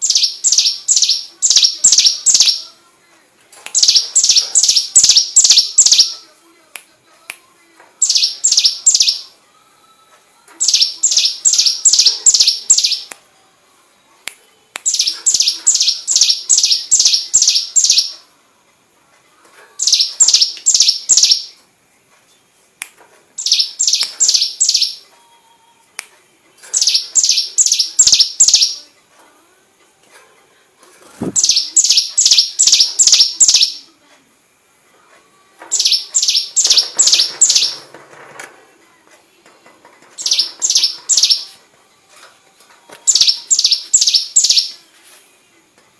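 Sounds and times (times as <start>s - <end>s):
bird singing rapid high notes: 0.0s - 2.6s, 3.7s - 6.2s, 8.0s - 9.3s, 10.6s - 13.1s, 14.8s - 18.2s, 19.8s - 21.6s, 23.4s - 25.0s, 26.7s - 28.8s, 31.2s - 33.9s, 35.7s - 37.8s, 40.2s - 41.6s, 43.1s - 44.8s.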